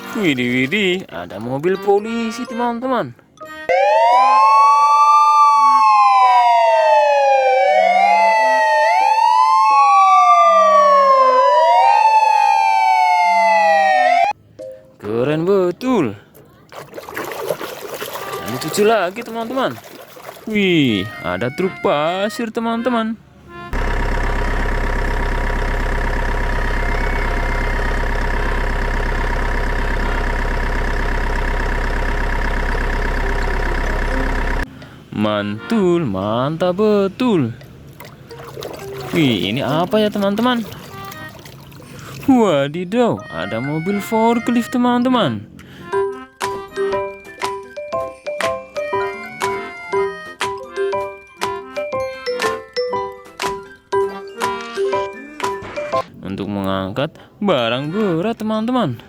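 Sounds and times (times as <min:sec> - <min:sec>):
police siren wailing: 0:03.5 - 0:14.4, 0:25.6 - 0:30.3, 0:43.1 - 0:45.3
truck engine idling: 0:23.5 - 0:38.4.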